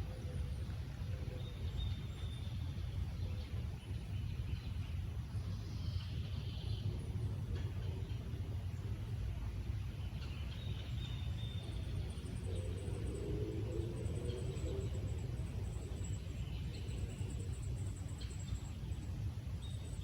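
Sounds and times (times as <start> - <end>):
distant traffic rumble: 0.0 - 20.0
low hum: 0.0 - 20.0.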